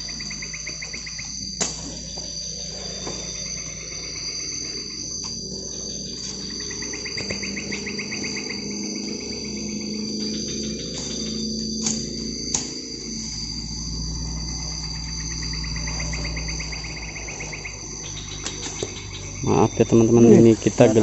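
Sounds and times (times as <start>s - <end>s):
crickets shrilling: 0.0s - 21.0s
fast pulsing insect trill: 0.0s - 21.0s.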